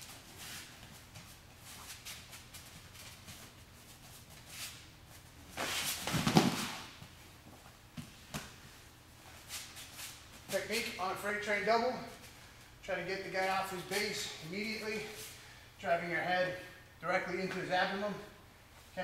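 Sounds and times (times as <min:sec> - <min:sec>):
feet scuffling on mat: 0:00.0 - 0:10.9.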